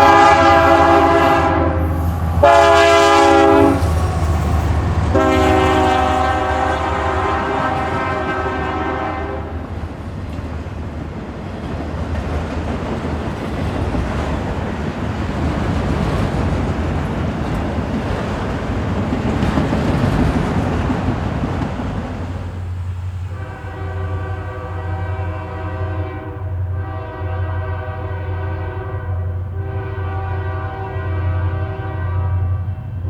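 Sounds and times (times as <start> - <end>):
locomotive air horn: 0.0 - 9.6, 23.3 - 33.0
train rumble and wheels on rails: 0.0 - 33.0.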